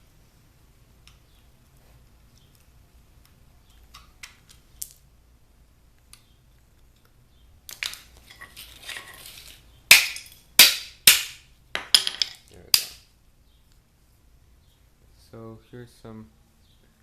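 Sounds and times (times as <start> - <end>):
parts scraping and rattling: 7.7 - 10.5, 11.8 - 12.9.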